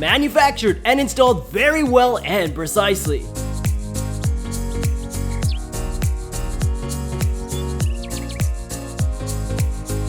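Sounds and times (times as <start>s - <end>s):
thumping kick drum: 3.1s - 10.0s.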